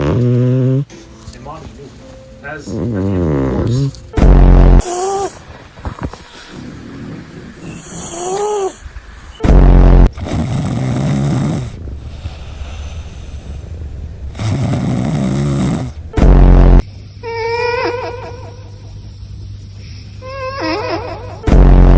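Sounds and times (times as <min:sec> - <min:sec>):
cat snoring: 0:00.0 - 0:00.9, 0:02.6 - 0:08.9, 0:09.5 - 0:12.2, 0:14.3 - 0:16.8
loud distorted blast: 0:04.2 - 0:04.9, 0:09.4 - 0:17.1, 0:21.5 - 0:21.9.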